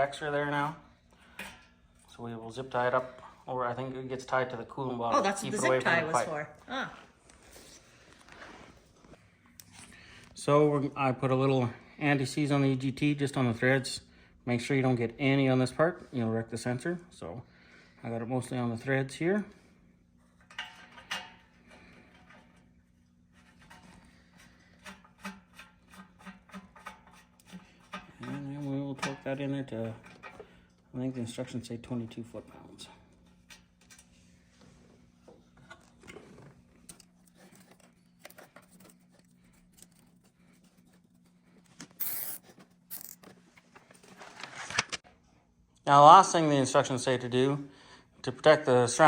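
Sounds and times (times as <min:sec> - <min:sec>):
hand tool clicks and rustles: 0:41.8 - 0:43.4.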